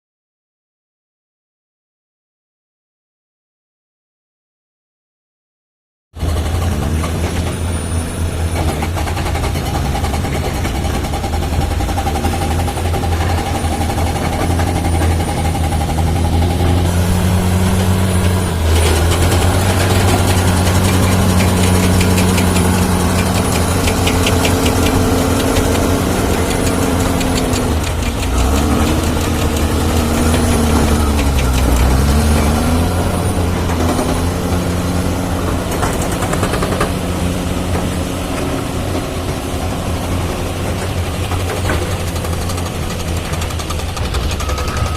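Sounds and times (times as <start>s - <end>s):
diesel engine revving: 6.2s - 44.9s
rapid clatter: 8.4s - 38.6s, 40.0s - 44.9s
thin high whine: 44.0s - 44.9s.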